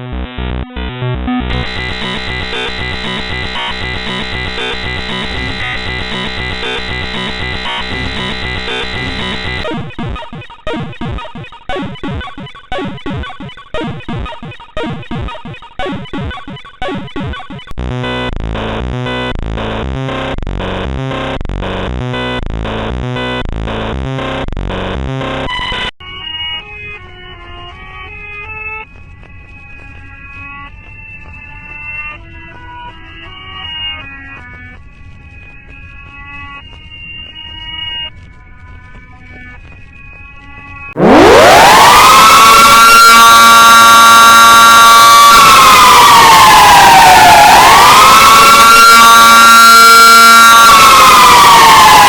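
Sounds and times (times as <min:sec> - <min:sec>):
pulsing on-off beeps: 0:01.3 - 0:09.7
clashing synthesized alarm tones: 0:01.5 - 0:10.2, 0:39.3 - 0:52.0.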